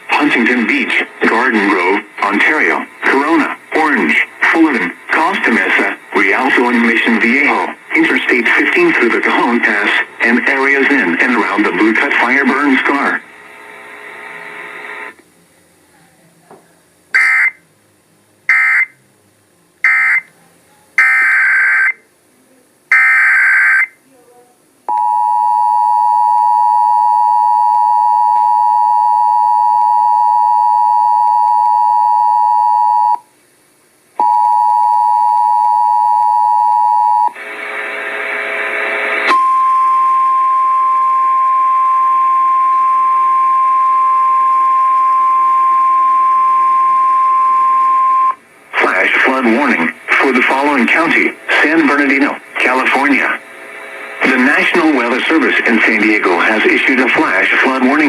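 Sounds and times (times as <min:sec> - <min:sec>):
radio noise: 0:00.0 - 0:15.2, 0:17.2 - 0:17.6, 0:18.5 - 0:18.9, 0:19.8 - 0:20.4, 0:21.0 - 0:22.0, 0:37.3 - 0:39.4, 0:48.3 - 0:58.0
steady warning alarm tone: 0:17.2 - 0:17.6, 0:18.5 - 0:19.0, 0:19.8 - 0:20.3, 0:21.0 - 0:22.0, 0:22.9 - 0:24.0, 0:39.3 - 0:48.4
two-tone attention signal: 0:39.3 - 0:48.4.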